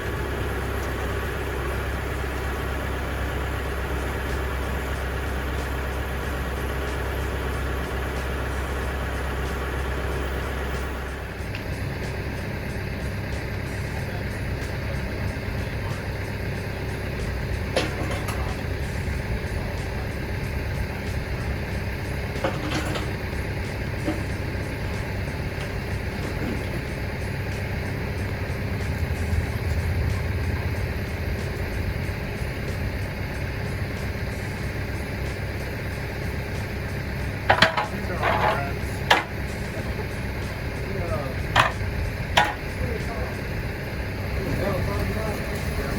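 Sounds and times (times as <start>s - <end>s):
road noise: 0.0s - 45.9s
truck engine running: 0.0s - 45.9s.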